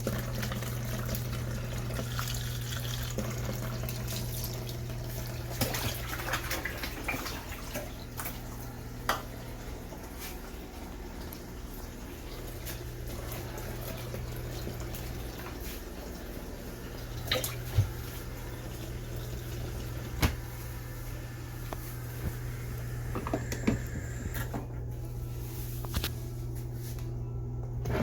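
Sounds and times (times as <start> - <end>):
water sloshing in washing machine: 0.0 - 27.0, 27.7 - 28.0
low motor hum: 7.7 - 28.0.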